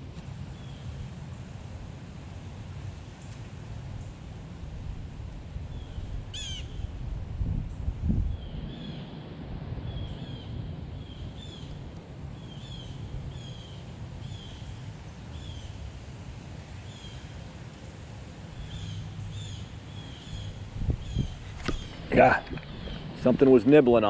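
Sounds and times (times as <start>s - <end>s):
strong wind on microphone: 4.6s - 11.9s, 20.2s - 23.6s
bird calling: 5.8s - 6.9s, 18.5s - 23.6s.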